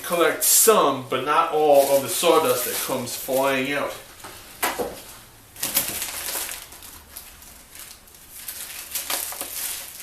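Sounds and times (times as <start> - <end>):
packaging rustling: 1.6 - 3.8, 5.6 - 10.0.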